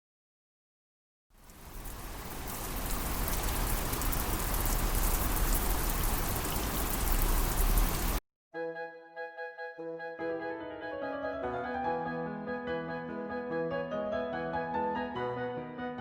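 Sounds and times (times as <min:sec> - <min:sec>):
heavy rain pouring: 0:01.3 - 0:08.2
piano music: 0:08.6 - 0:16.0.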